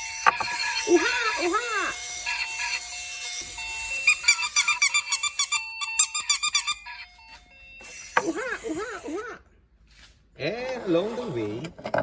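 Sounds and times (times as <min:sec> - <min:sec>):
high squeaks: 0:00.0 - 0:09.4.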